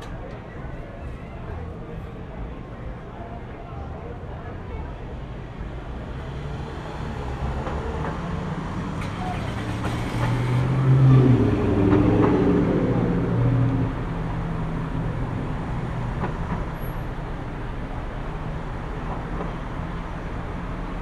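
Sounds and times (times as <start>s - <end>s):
traffic rumble: 0.0s - 21.0s
vehicle engine passing: 6.2s - 16.4s.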